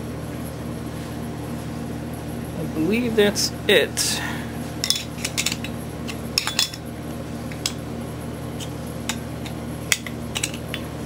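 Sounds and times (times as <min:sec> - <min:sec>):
steady low hum: 0:00.0 - 0:11.0
metal discs clinking: 0:04.8 - 0:06.8, 0:08.6 - 0:10.9.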